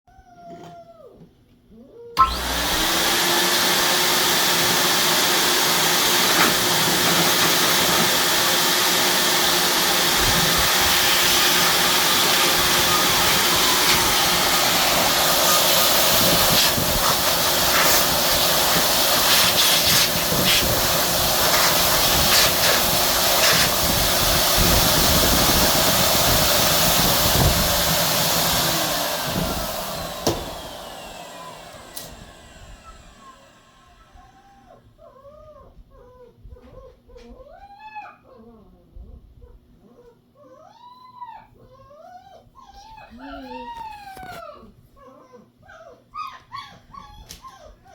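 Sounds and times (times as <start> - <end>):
blow dryer blowing air: 2.2 - 34.3.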